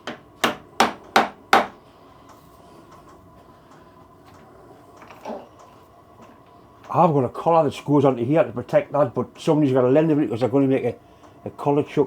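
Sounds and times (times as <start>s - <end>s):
sharp knocks: 0.0s - 1.8s.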